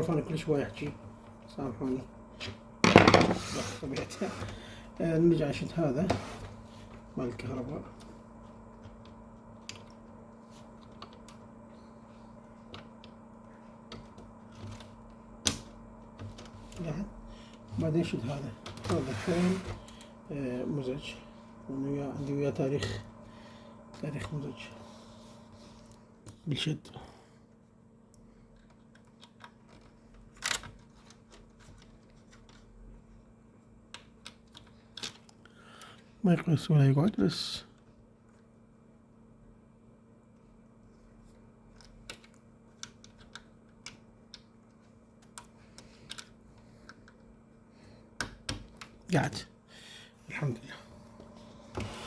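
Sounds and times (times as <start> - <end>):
steady low hum: 0.0 - 52.0
small clicks and handling noises: 6.8 - 11.5, 12.4 - 16.9, 28.1 - 33.2, 33.9 - 36.1, 41.0 - 47.4.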